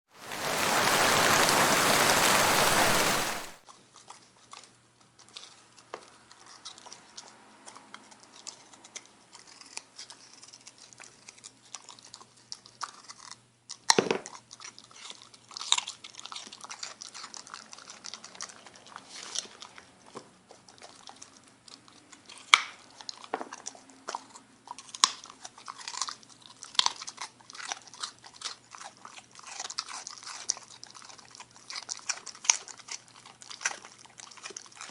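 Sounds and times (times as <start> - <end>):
steady hiss: 0.2 - 3.6
dog chewing and crunching food: 2.2 - 34.9.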